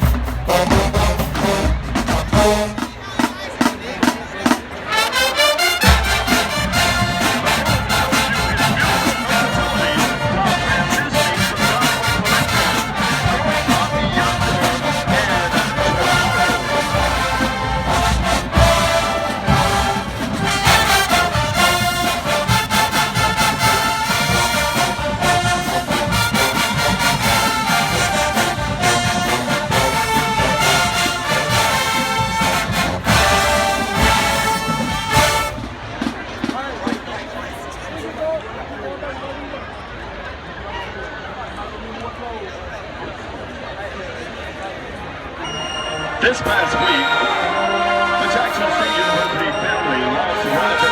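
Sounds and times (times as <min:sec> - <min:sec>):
brass section playing: 0:00.0 - 0:03.3, 0:04.8 - 0:36.1, 0:45.4 - 0:50.9
steady drum beat: 0:00.0 - 0:37.1.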